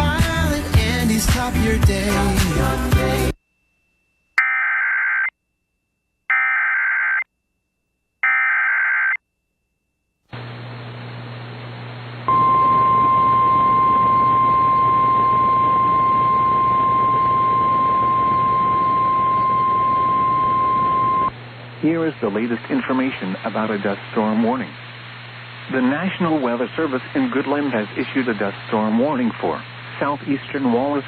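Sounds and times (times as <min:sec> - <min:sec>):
radio hiss and hum: 0:10.3 - 0:31.0
loud high warning beep: 0:12.3 - 0:21.3
warbling digital data tones: 0:12.3 - 0:21.3.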